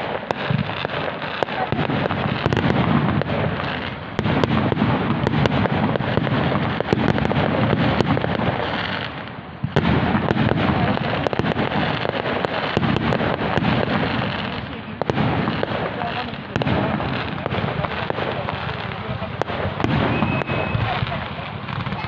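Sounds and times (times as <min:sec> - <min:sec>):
fireworks bangs and crackling: 0:00.0 - 0:22.0
sharp firework bang: 0:04.2 - 0:08.6, 0:09.6 - 0:22.0.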